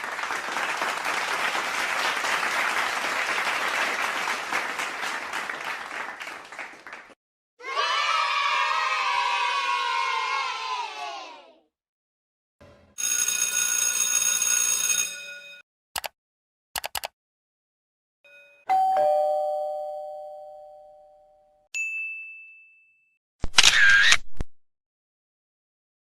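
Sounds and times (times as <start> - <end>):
short clicks: 16.0 - 16.2, 16.8 - 17.1
bright ringing tone: 18.3 - 23.2
two-note doorbell ding-dong: 18.3 - 23.2.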